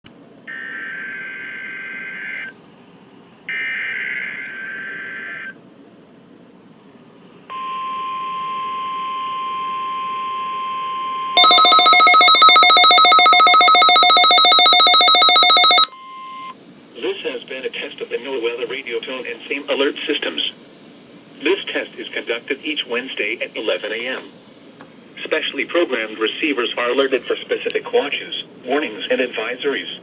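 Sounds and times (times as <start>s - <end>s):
rapidly pulsing electronic alarm beep: 7.5s - 16.5s
steady warning alarm tone: 7.5s - 16.5s
warbling data tones: 11.4s - 15.9s.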